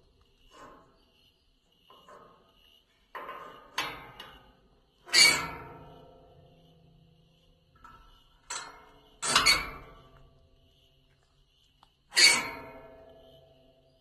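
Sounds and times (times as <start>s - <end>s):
metal gate latch clanking: 9.2s - 10.0s.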